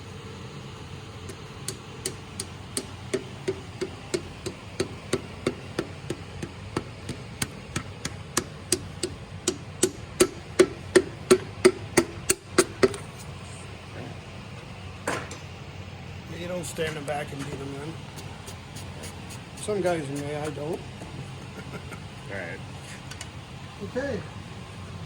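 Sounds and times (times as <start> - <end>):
hammer tapping piston: 1.2 - 13.4, 16.9 - 21.6.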